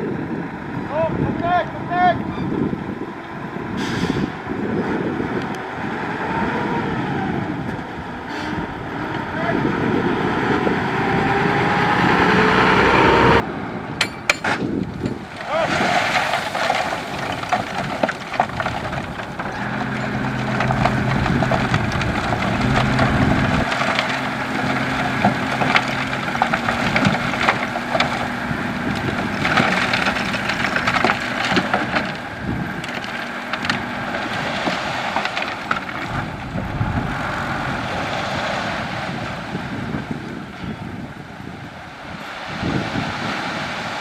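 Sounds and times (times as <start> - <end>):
diesel engine humming: 0.0 - 44.0
gravel sliding crackle: 14.8 - 44.0.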